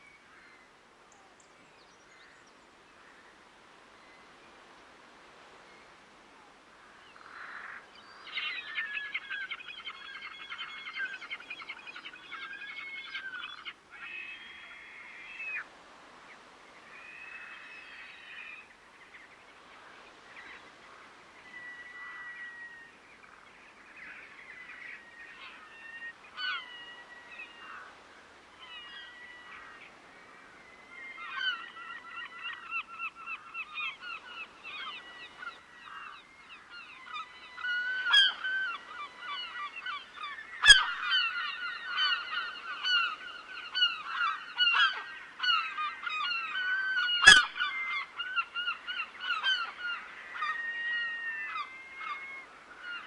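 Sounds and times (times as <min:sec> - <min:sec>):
waterbirds calling harshly: 0:31.0 - 0:53.0.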